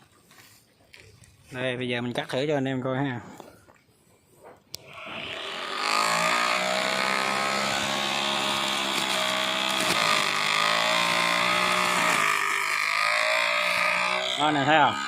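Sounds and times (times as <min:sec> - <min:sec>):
grass trimmer motor whine: 0:04.8 - 0:15.0.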